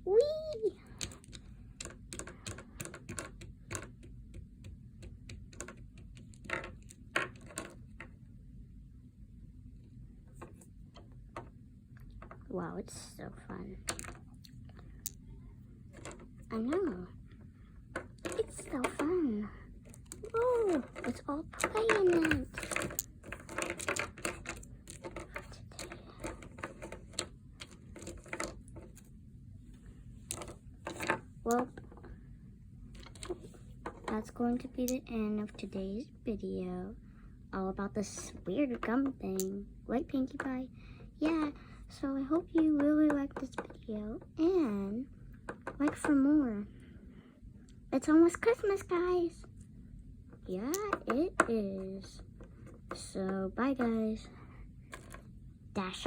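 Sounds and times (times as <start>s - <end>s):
small toys clicking and tapping: 0.2s - 8.1s, 13.8s - 15.2s, 15.9s - 16.9s, 17.9s - 19.2s, 19.8s - 29.0s, 30.3s - 32.1s, 33.0s - 35.7s, 38.0s - 39.6s, 42.4s - 44.3s, 50.5s - 54.0s.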